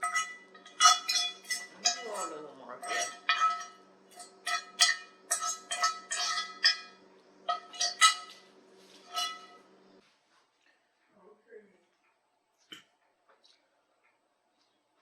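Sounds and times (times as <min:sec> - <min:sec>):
spoon clinking against a dish: 0:00.0 - 0:08.4.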